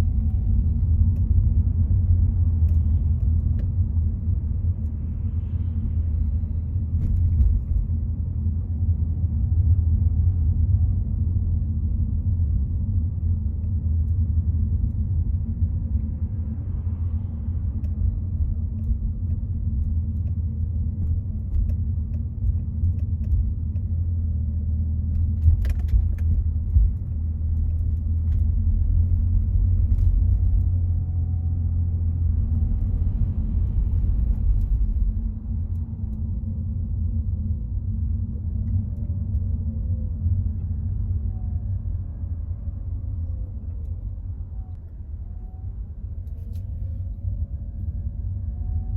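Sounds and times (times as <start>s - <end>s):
car driving on road: 0.0s - 48.9s.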